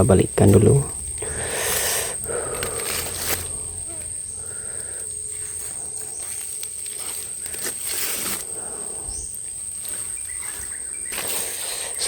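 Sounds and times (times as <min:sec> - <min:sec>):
foil rustling and scraping: 0:01.5 - 0:03.8, 0:05.5 - 0:08.8, 0:09.7 - 0:12.0.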